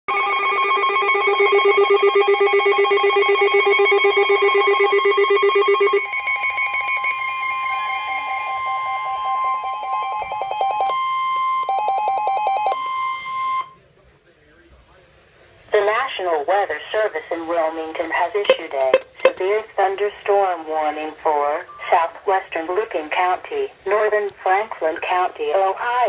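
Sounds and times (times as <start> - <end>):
warbling electronic alert: 0.1 - 13.7, 18.4 - 19.4
steady alert tone: 18.4 - 19.4.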